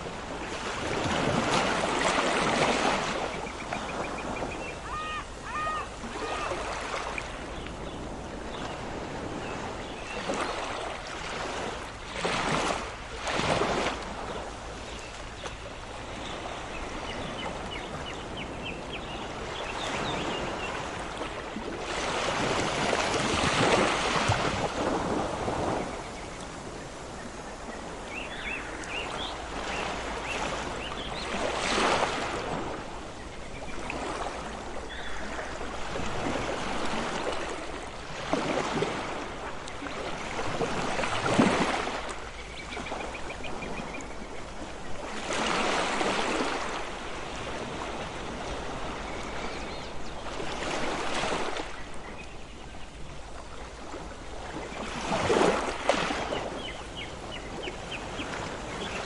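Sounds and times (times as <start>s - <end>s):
ocean surf washing ashore: 0.0s - 18.4s, 19.3s - 42.2s.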